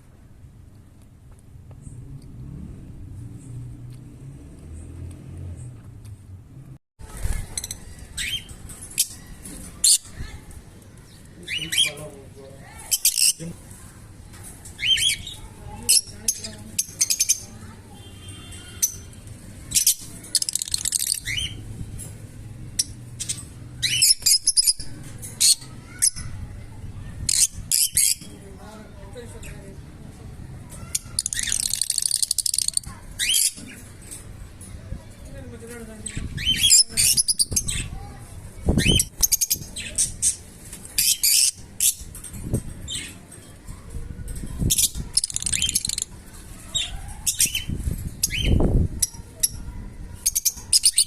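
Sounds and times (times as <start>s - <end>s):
lovebirds chirping and squawking: 7.1s - 29.8s, 30.6s - 51.0s
bird rattling chatter: 19.0s - 22.2s, 30.8s - 34.4s.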